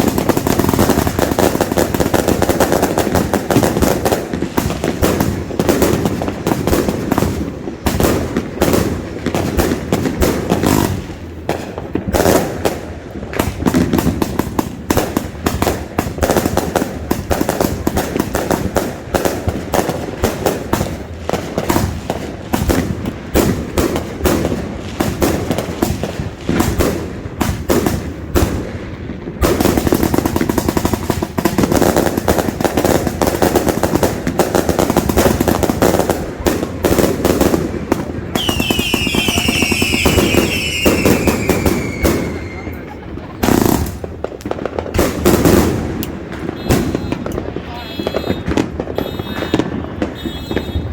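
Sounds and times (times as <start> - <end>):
fireworks cake firing sharp reports: 0.0 - 50.9.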